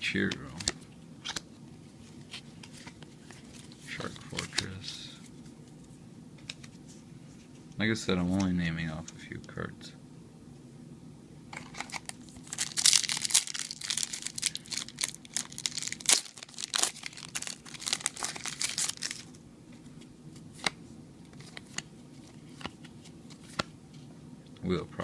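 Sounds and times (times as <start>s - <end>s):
foil wrapper tearing and crinkling: 11.7s - 19.4s.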